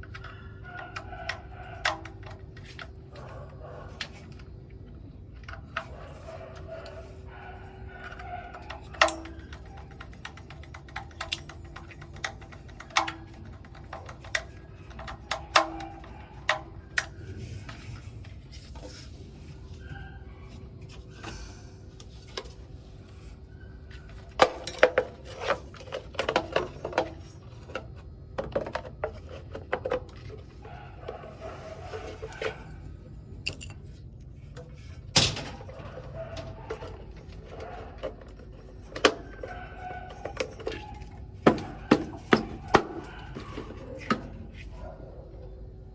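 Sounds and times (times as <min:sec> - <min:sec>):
clinks of tools and parts: 0:08.0 - 0:17.1, 0:33.4 - 0:34.6.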